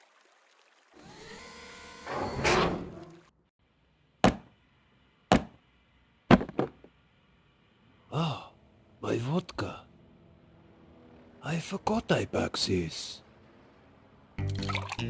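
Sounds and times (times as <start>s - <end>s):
cartoon sliding door rolling shut: 1.0s - 3.3s
short sharp knocks: 4.2s - 4.5s, 5.3s - 5.6s.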